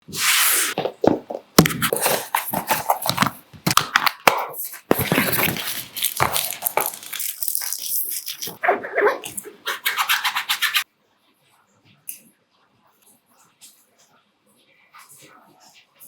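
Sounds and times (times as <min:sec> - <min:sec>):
packaging crinkling and tearing: 0:01.8 - 0:08.6.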